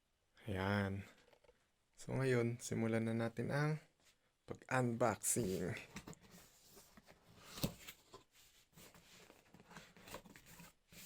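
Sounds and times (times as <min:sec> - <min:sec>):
cardboard box scrapes and rustles: 0:06.0 - 0:11.0.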